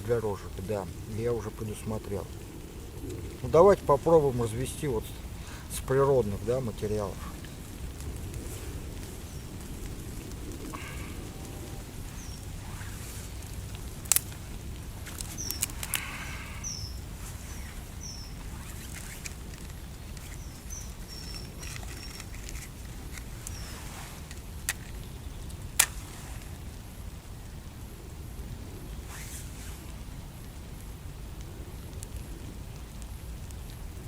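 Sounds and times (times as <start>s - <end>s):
small birds chirping: 0.0s - 26.9s
wind and rain: 0.0s - 34.0s
dry twigs snapping: 6.4s - 26.7s.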